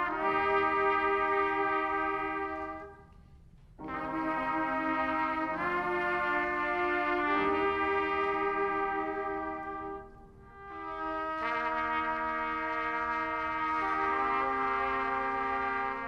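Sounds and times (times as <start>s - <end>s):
brass sustained chords: 0.0s - 16.0s.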